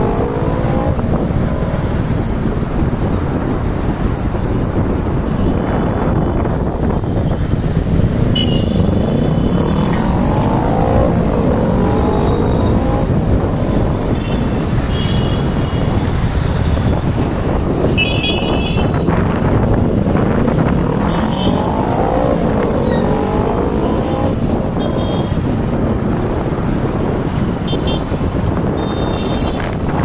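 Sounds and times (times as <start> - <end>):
engine rising and falling in pitch: 0.0 - 2.4, 8.9 - 13.6, 19.7 - 24.6
engine rumble: 0.0 - 17.9
wind noise on microphone: 0.0 - 30.0.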